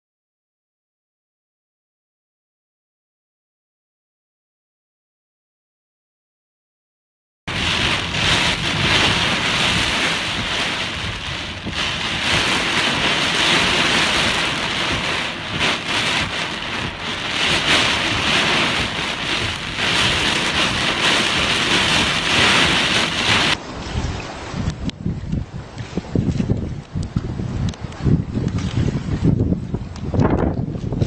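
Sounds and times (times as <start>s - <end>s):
heavy wind-driven rain: 7.5s - 31.0s
wind buffeting microphone: 7.5s - 31.0s.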